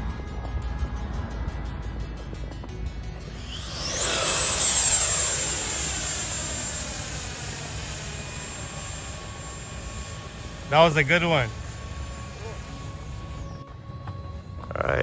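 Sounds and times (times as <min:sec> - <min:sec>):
model jet whine flying past: 0:03.2 - 0:14.0.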